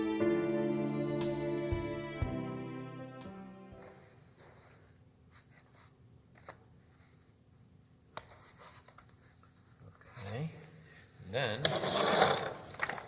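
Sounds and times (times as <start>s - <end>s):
background music: 0.0s - 4.1s.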